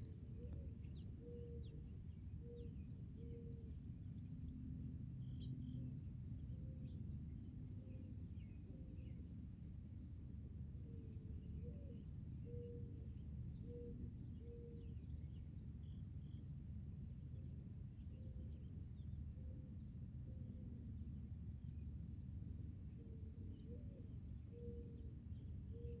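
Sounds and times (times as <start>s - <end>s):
faint chirps: 0.0s - 6.0s, 11.3s - 16.4s, 23.5s - 26.0s
insects droning: 0.0s - 26.0s.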